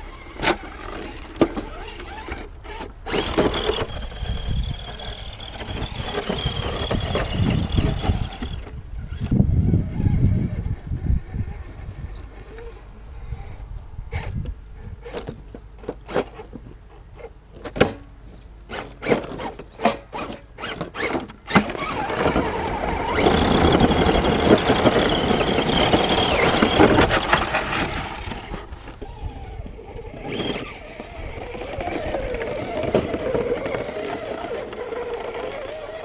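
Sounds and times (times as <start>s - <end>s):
electric motor whine: 1.7s - 10.7s, 20.6s - 36.0s.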